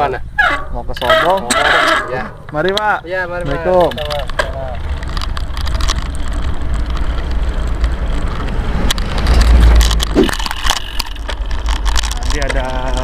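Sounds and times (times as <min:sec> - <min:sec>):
bicycle rolling on rough track: 0:02.6 - 0:13.0.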